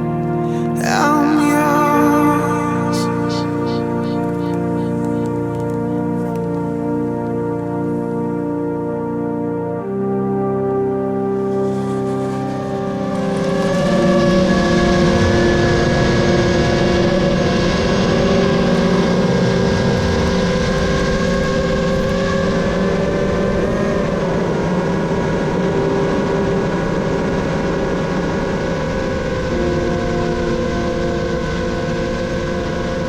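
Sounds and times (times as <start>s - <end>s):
quadcopter propellers whining: 0.0s - 6.8s, 11.5s - 33.0s
heavy wind rush: 11.4s - 33.0s.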